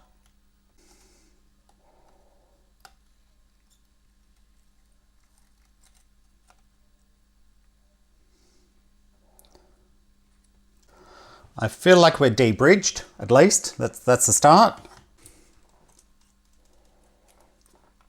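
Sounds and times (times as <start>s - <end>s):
faint small clicks: 2.8s - 7.8s.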